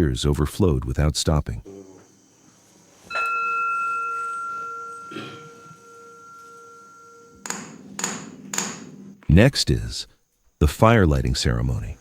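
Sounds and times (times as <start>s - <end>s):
bowl bell ringing: 3.1s - 9.1s
sharp knock: 7.4s - 9.1s.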